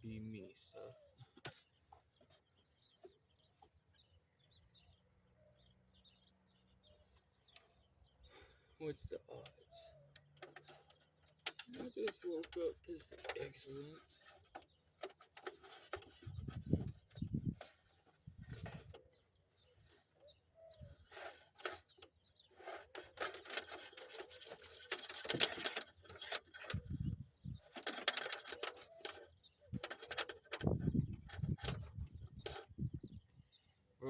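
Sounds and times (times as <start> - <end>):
hands and tools scraping: 9.4 - 27.0, 27.6 - 32.8.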